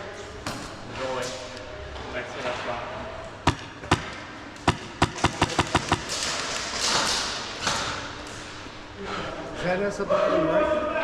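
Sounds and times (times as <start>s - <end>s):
airsoft gun shots: 3.4s - 6.2s.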